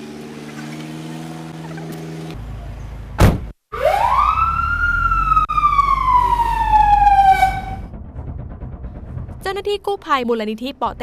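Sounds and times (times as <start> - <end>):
siren wailing: 3.7 - 7.9.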